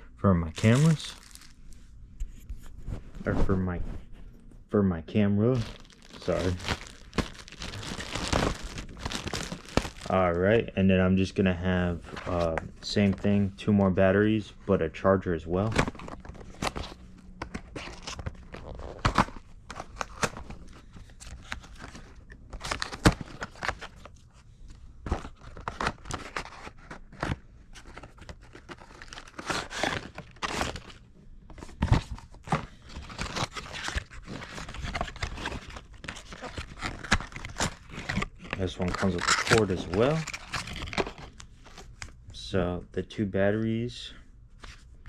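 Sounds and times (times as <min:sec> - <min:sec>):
cardboard and plastic crinkling: 0:00.6 - 0:01.6, 0:05.4 - 0:10.6, 0:15.6 - 0:24.2, 0:25.0 - 0:42.0.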